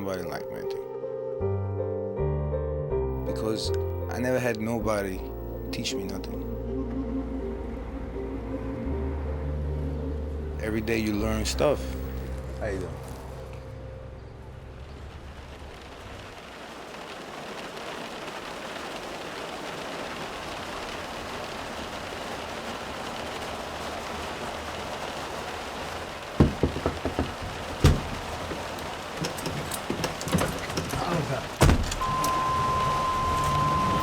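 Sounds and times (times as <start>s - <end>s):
sharp knocks and clicks: 26.4s - 32.0s.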